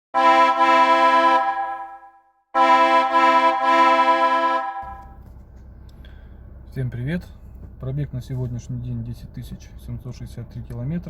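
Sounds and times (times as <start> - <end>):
held electronic chords: 0.2 - 5.0
low steady hum: 2.8 - 11.0.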